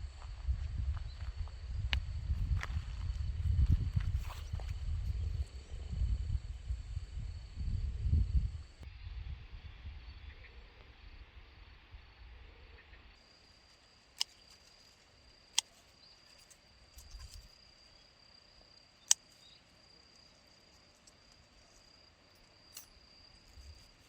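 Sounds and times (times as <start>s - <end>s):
high-pitched insect trill: 13.2s - 24.0s.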